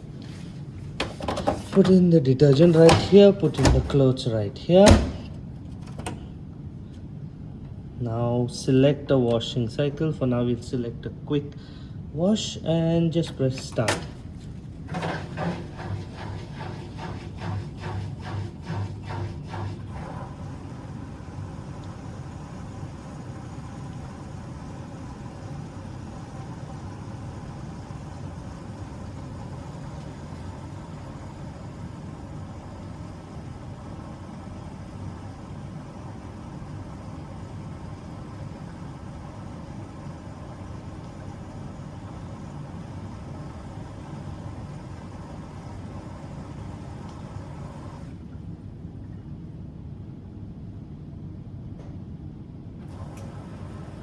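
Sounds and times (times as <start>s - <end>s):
washing machine hiss: 0.0s - 6.4s, 13.3s - 48.3s, 52.8s - 54.0s
washing machine humming: 0.0s - 54.0s.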